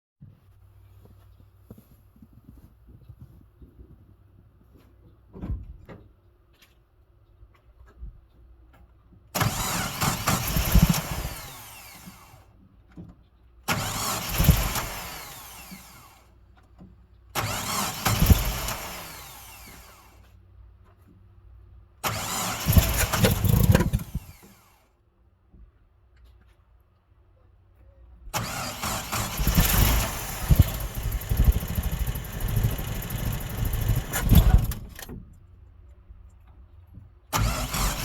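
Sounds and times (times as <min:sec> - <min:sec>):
engine cranking by starter: 0:09.4 - 0:12.5, 0:13.7 - 0:16.4, 0:17.4 - 0:20.3, 0:22.0 - 0:24.8, 0:28.4 - 0:35.3, 0:37.3 - 0:38.0.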